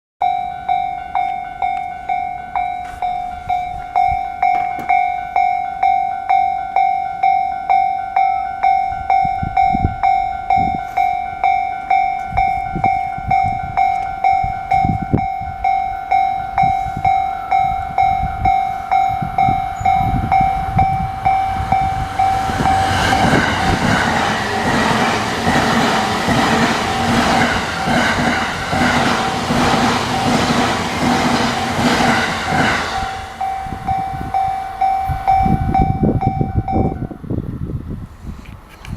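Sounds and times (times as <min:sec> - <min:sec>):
level crossing warning bell: 0:00.2 - 0:37.2
train wheels clattering: 0:16.0 - 0:36.7.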